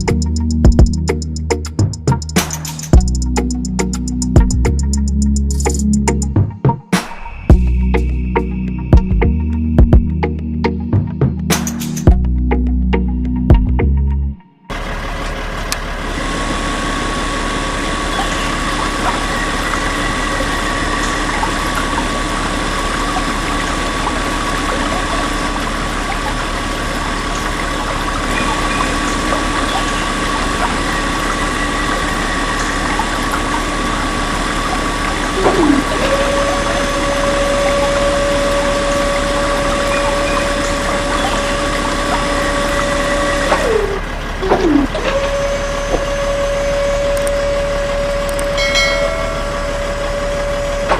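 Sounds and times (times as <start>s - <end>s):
small electric motors whining: 28.3s - 50.9s
downward-sliding sounds: 35.4s - 36.8s.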